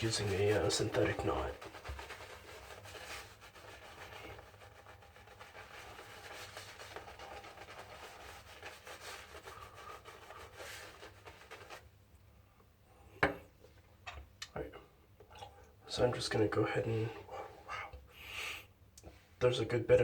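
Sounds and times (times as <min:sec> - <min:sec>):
shaving brush whisking lather: 0:00.0 - 0:11.9.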